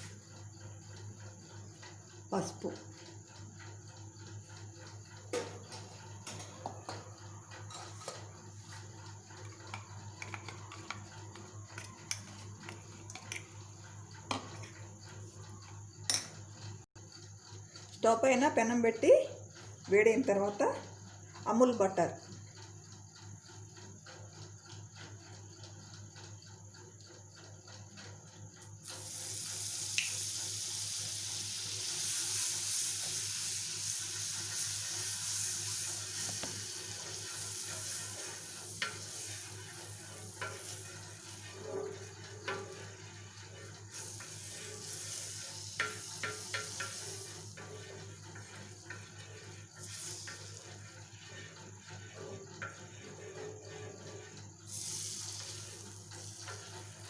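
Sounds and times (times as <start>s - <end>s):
butter sizzling on hot pan: 28.7s - 57.0s.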